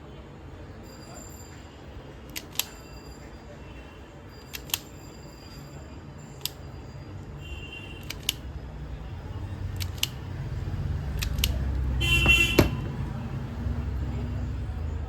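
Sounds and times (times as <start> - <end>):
small tools clicking: 2.3 - 2.8, 4.4 - 4.9, 8.0 - 8.4, 9.7 - 10.2, 11.1 - 11.7.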